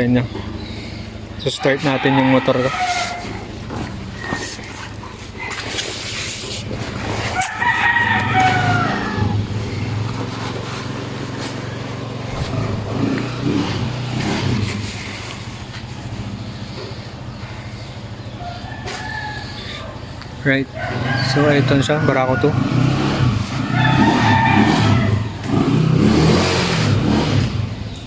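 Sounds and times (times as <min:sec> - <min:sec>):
motorcycle engine running: 0:00.0 - 0:28.0
rooster crowing: 0:01.5 - 0:04.6, 0:07.3 - 0:10.0, 0:18.3 - 0:25.5.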